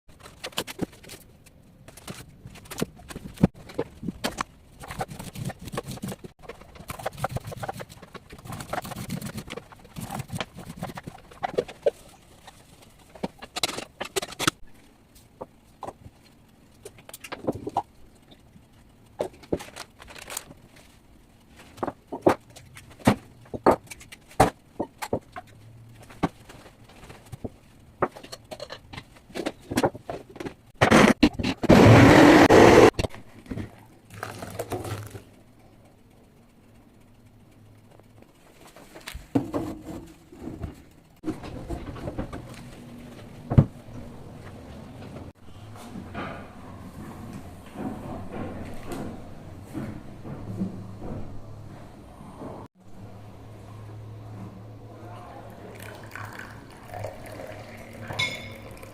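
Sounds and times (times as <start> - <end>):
utensils and bowls clinking: 55.7 - 58.9.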